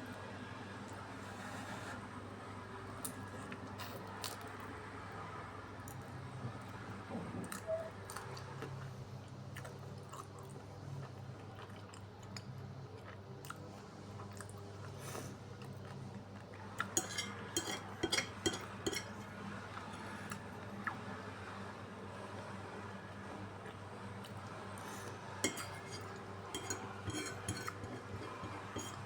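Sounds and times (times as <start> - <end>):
steady low hum: 23.4 - 29.0.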